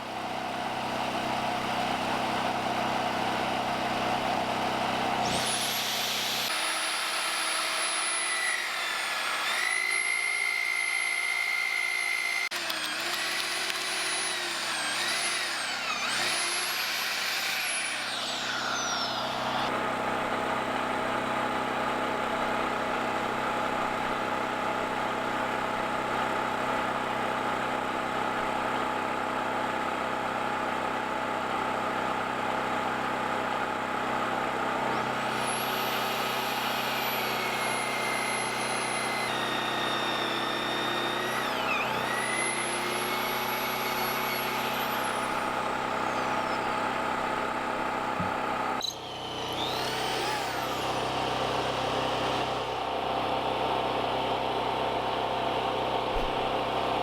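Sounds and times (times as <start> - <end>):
small engine running: 0.0 - 57.0
high motor whine: 4.0 - 19.8, 34.9 - 53.8.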